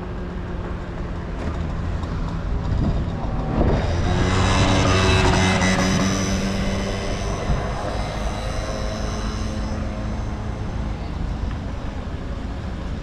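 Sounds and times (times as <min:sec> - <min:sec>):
low engine drone of passing motor: 0:00.0 - 0:13.0.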